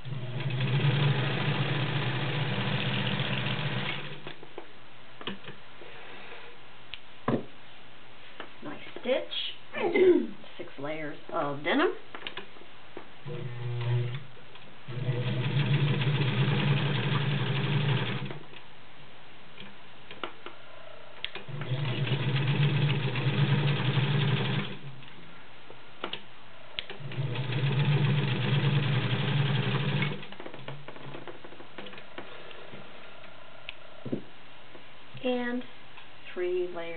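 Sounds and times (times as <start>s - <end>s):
sewing machine stitching: 0.0s - 4.3s, 13.3s - 14.2s, 14.9s - 18.4s, 21.3s - 24.9s, 26.9s - 30.7s.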